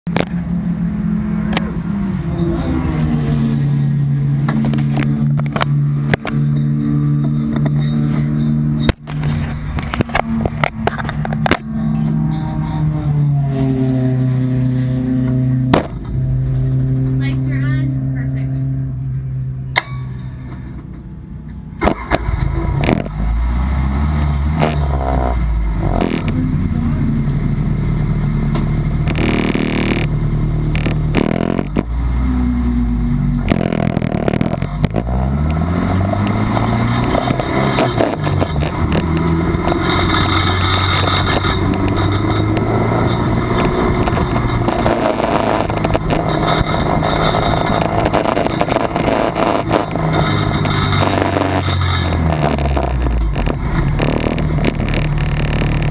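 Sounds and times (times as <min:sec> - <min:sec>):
wind and road noise: 0:00.0 - 0:55.9
race car engine revving: 0:00.1 - 0:19.8, 0:20.4 - 0:55.9
sharp knocks: 0:15.7 - 0:16.2.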